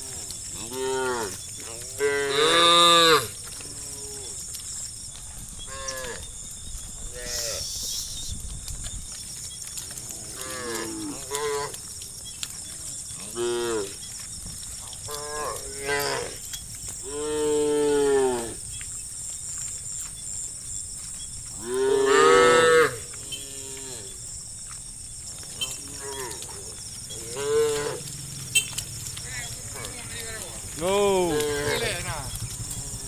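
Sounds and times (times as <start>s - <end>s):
cattle mooing: 0.0s - 4.4s, 7.1s - 7.7s, 10.0s - 11.8s, 13.2s - 14.0s, 15.0s - 16.4s, 17.0s - 18.6s, 21.6s - 24.2s, 25.6s - 28.7s, 29.3s - 33.0s.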